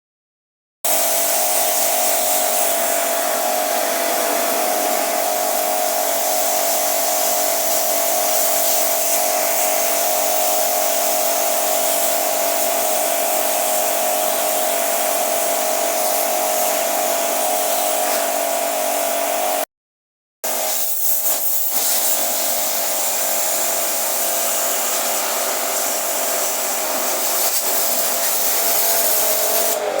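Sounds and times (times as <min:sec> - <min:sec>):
rush of air or spray: 0:00.9 - 0:10.1, 0:20.7 - 0:30.0.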